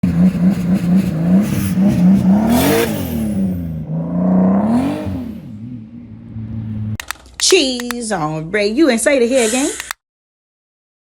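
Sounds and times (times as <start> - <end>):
car engine idling and revving: 0.0 - 7.9
turbo hiss: 9.3 - 10.0.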